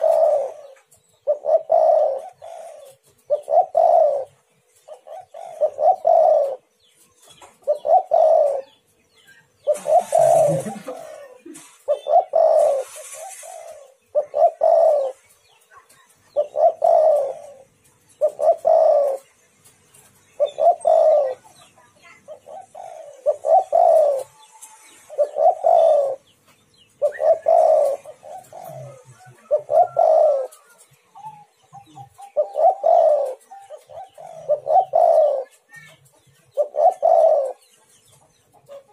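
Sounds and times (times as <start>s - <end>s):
dove cooing: 0.0s - 6.7s, 7.6s - 8.8s, 9.6s - 19.4s, 20.2s - 26.3s, 26.9s - 37.8s, 38.5s - 38.9s
short bursts of hiss: 11.5s - 13.8s.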